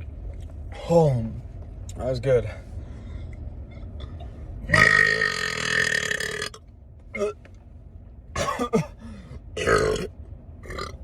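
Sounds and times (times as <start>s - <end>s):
man burping loudly: 4.7s - 6.6s, 9.6s - 11.0s.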